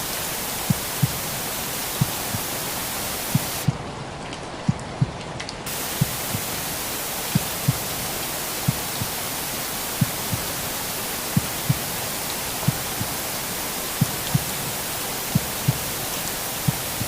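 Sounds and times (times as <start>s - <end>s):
rain white noise hiss: 0.0s - 17.0s
raindrop ticks: 0.1s - 6.6s, 7.2s - 9.2s, 9.9s - 17.0s
heartbeat thumps: 0.6s - 2.6s, 3.2s - 3.8s, 4.7s - 6.6s, 7.3s - 9.2s, 9.9s - 10.6s, 11.3s - 12.0s, 12.6s - 13.3s, 14.0s - 14.7s, 15.3s - 17.0s.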